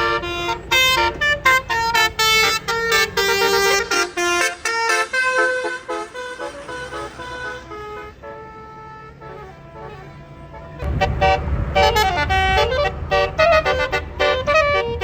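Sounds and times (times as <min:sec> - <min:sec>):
bus engine rumble: 0:00.0 - 0:15.0
bus musical horn melody: 0:00.0 - 0:15.0.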